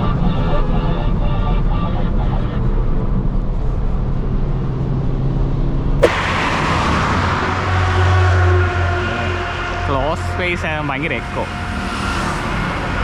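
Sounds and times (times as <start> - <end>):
sharp click: 6.0 - 6.3
loud rushing noise: 6.0 - 7.8.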